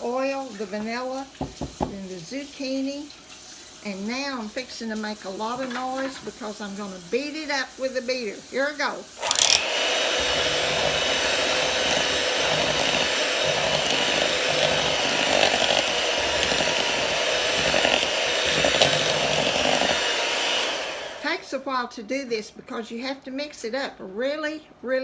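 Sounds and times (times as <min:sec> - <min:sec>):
beaters knocking bowl: 0:09.2 - 0:20.7
electric mixer motor whine: 0:09.2 - 0:21.4.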